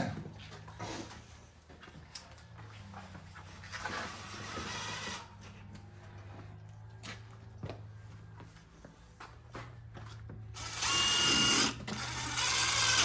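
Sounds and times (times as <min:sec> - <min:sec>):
cordless drill driving screws: 0:10.6 - 0:13.0.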